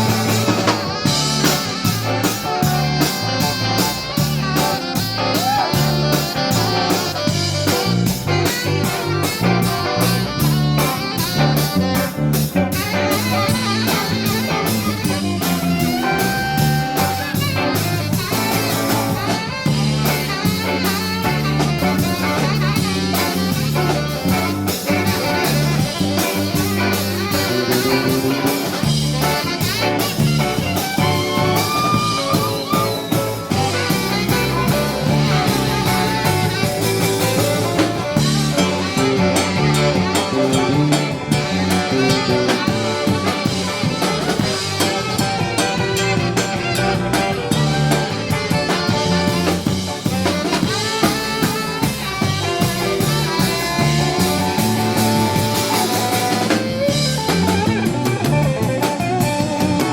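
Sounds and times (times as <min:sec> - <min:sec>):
drum kit beat: 0:00.0 - 0:59.9
guitar lead with bent notes: 0:00.0 - 0:59.9
pulsing bass line: 0:00.0 - 0:59.9.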